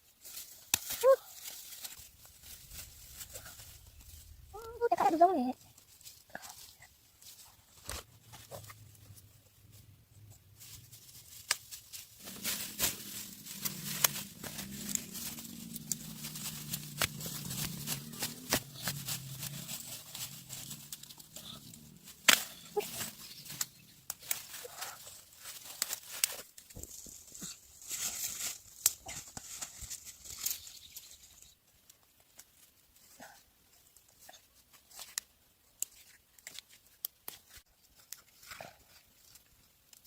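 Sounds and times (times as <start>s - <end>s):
corn plants rustling and snapping: 0.2s - 4.7s, 10.2s - 32.7s, 34.1s - 40.0s.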